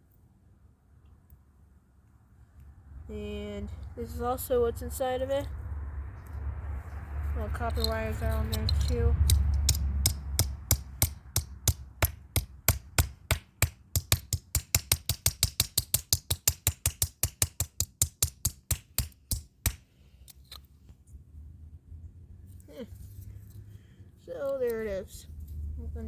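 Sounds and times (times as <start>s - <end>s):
sharp hits on lock parts: 7.8s - 19.9s.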